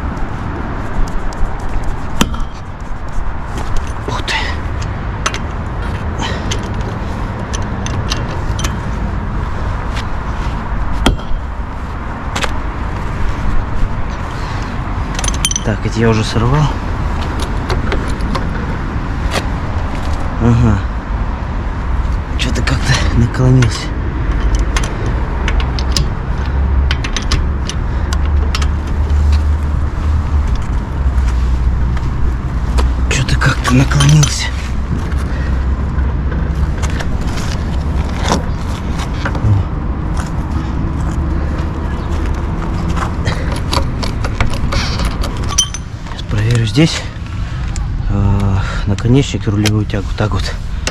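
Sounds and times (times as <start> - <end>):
low engine-like rumble: 0.0 - 50.9
tools and metal parts knocking: 4.8 - 8.9, 15.1 - 16.3, 23.6 - 29.2, 42.9 - 46.3
metallic clicks and taps: 24.3 - 26.2, 26.8 - 29.0.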